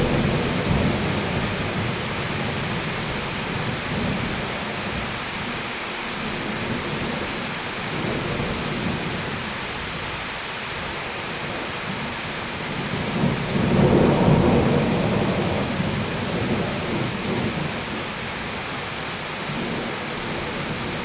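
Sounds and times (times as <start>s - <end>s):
low rumble of thunder: 0.0s - 5.5s, 11.3s - 18.8s, 19.4s - 21.0s
heavy rain hissing: 0.0s - 21.0s.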